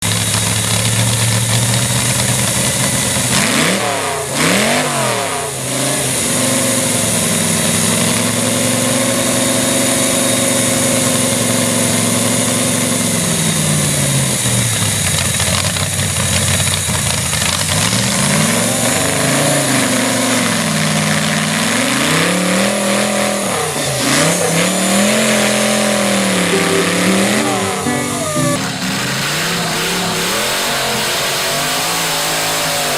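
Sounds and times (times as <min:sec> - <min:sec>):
chainsaw engine running: 0:00.0 - 0:27.8
chainsaw revving: 0:03.2 - 0:10.6, 0:17.3 - 0:26.6, 0:28.6 - 0:32.9.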